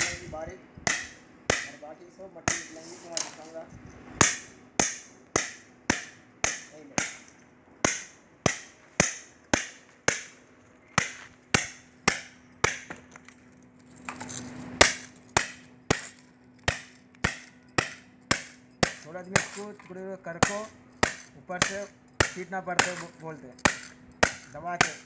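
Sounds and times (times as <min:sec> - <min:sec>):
rough rustling scrape: 0:02.7 - 0:04.1, 0:13.8 - 0:15.2.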